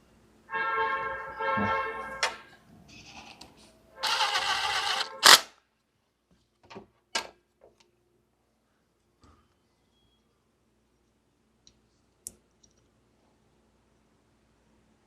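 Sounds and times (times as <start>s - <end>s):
scraping rustle of parts: 2.9s - 5.4s.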